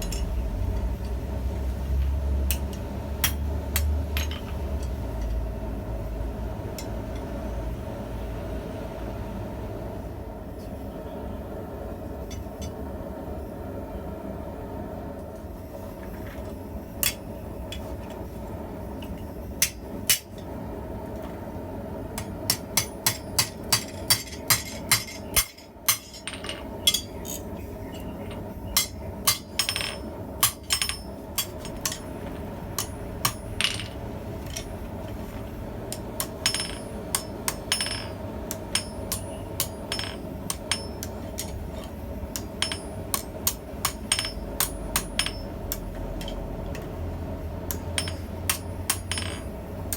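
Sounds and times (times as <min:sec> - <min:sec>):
hammer striking hot steel on anvil: 0:00.0 - 0:01.2, 0:02.4 - 0:05.4, 0:17.0 - 0:17.8, 0:19.0 - 0:20.5, 0:22.2 - 0:27.5, 0:28.3 - 0:35.2, 0:35.9 - 0:46.9, 0:47.6 - 0:49.9.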